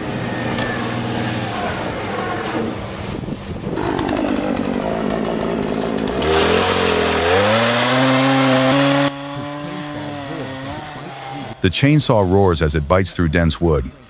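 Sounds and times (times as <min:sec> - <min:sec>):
chainsaw running under load: 0:03.8 - 0:11.6.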